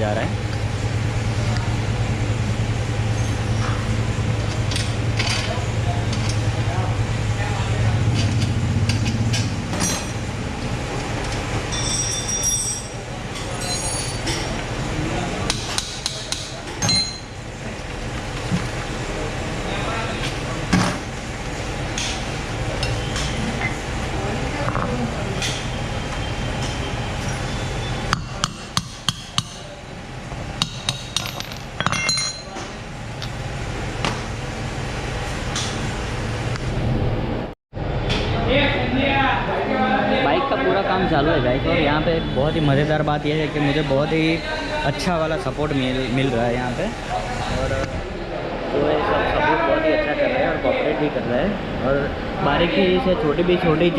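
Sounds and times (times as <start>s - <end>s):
low workshop hum: 0.0s - 53.9s
sharp metallic clinks: 11.7s - 13.0s
high metallic squealing: 11.7s - 14.3s.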